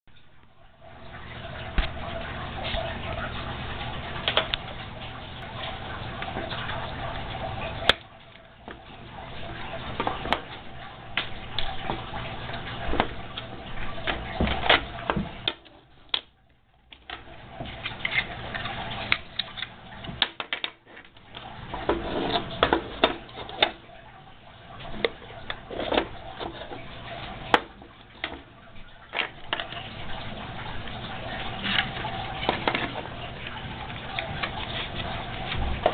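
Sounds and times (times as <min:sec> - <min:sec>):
plastic pieces clicking and knocking: 0:19.1 - 0:21.4.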